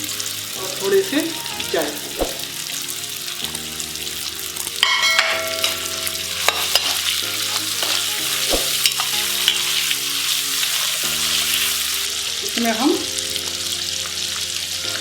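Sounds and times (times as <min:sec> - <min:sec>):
food sizzling in hot oil: 0:00.0 - 0:15.0
spoon scraping and knocking pan: 0:04.7 - 0:11.8.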